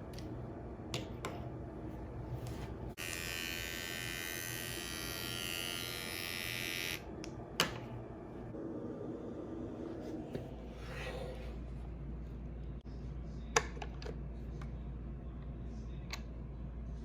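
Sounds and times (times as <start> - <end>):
small electric motor buzzing: 3.0 - 7.1.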